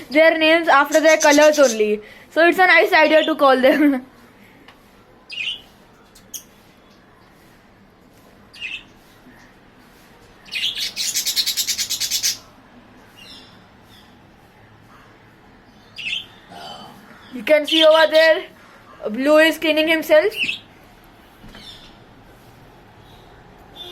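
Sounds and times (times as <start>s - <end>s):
budgerigars chirping: 10.6s - 12.4s.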